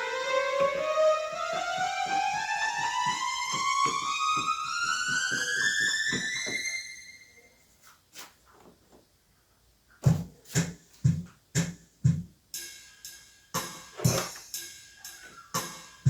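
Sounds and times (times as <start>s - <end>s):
electronic keyboard tone gliding upward: 0.0s - 7.5s.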